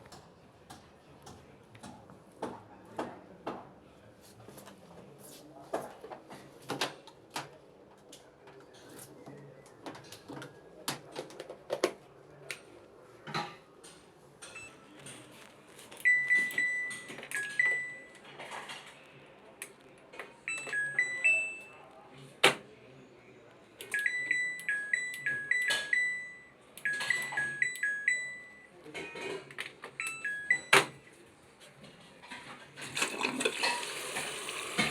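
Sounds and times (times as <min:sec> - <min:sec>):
washing machine beeping: 0:16.0 - 0:18.2, 0:20.4 - 0:21.9, 0:23.9 - 0:28.8, 0:30.0 - 0:31.0, 0:32.9 - 0:34.9.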